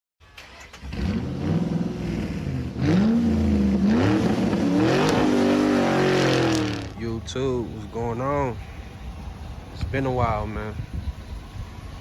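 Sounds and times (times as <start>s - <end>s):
car engine revving: 0.8s - 7.0s.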